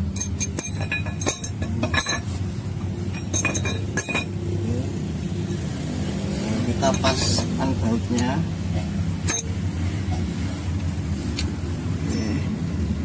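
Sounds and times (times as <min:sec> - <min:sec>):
metal tools clinking: 0:00.1 - 0:02.4, 0:03.1 - 0:04.4, 0:05.4 - 0:05.7, 0:06.8 - 0:07.8, 0:09.2 - 0:09.6, 0:12.0 - 0:12.5.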